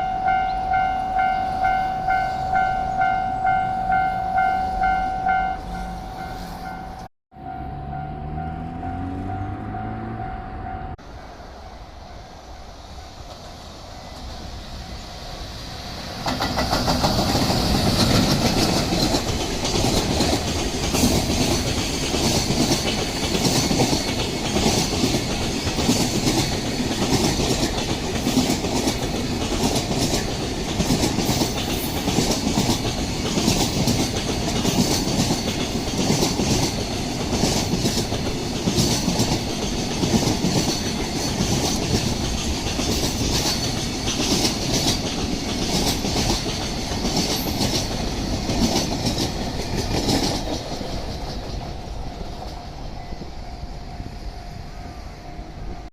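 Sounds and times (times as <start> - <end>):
freight train rumbling: 0.0 - 55.9
train wheels clicking over rail joints: 15.9 - 53.4.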